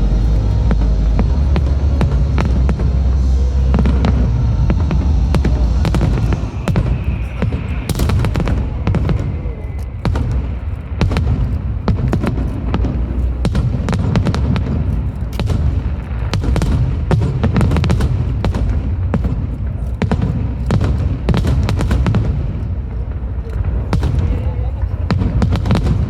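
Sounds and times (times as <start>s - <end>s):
firework bangs and crackles: 0.0s - 26.0s
low rumble of shell bursts: 0.0s - 26.0s.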